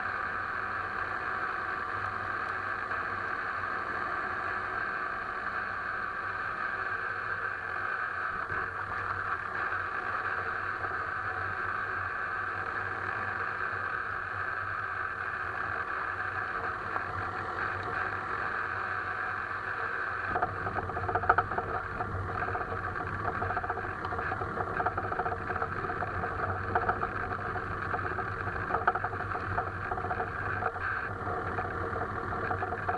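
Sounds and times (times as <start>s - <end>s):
car engine and road noise: 0.0s - 32.9s
suspension knocking: 20.3s - 32.9s.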